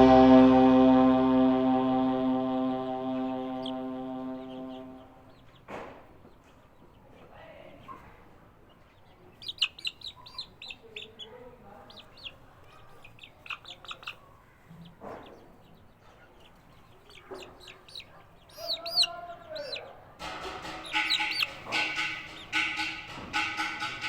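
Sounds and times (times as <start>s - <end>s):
chicken low call: 0.0s - 5.2s
chickens chirping: 9.0s - 14.3s, 15.2s - 24.0s.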